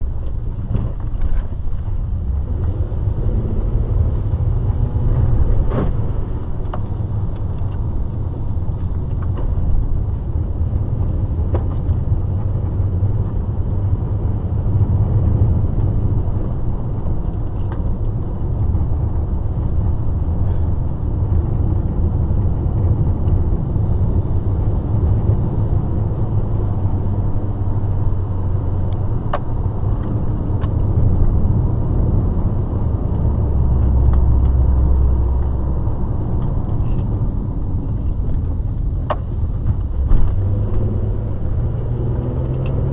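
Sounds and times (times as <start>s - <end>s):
car engine and road noise: 0.0s - 42.9s.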